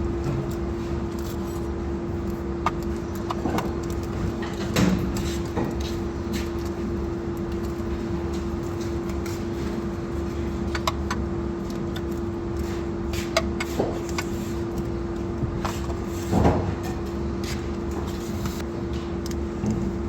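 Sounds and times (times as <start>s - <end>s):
workshop hum: 0.0s - 20.0s.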